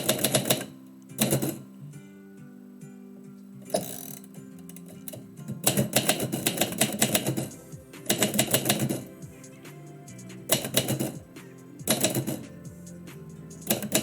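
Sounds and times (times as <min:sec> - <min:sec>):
typewriter keys typing: 0:05.6 - 0:09.2, 0:10.5 - 0:12.5, 0:13.7 - 0:14.0.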